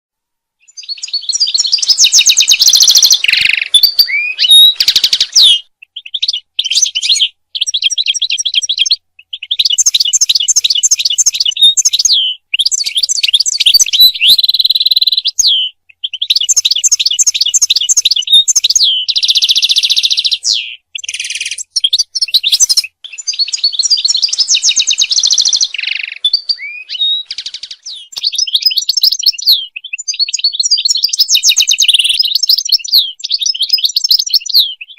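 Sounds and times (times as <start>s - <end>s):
goldfinch singing: 0.6s - 34.9s.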